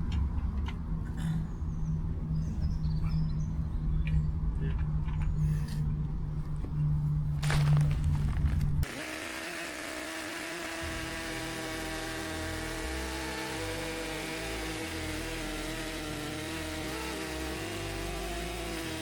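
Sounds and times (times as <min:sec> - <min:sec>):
chainsaw cutting log at full throttle: 0:07.4 - 0:19.0.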